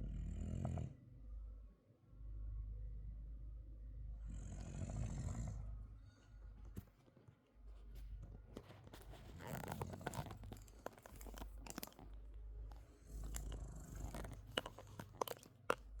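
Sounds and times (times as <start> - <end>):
dog snoring: 0.0 - 0.9, 4.2 - 5.6, 9.0 - 16.0
small clicks and rustles: 6.7 - 16.0.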